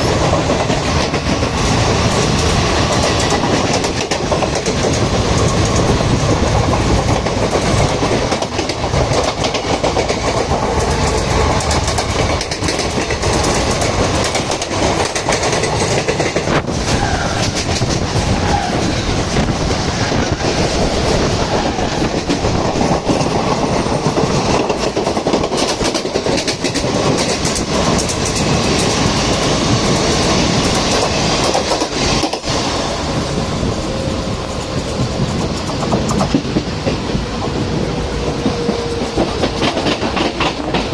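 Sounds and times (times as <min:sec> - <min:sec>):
wheels clattering over rail joints: 0:00.0 - 0:20.8
train rumbling at speed: 0:00.0 - 0:40.9.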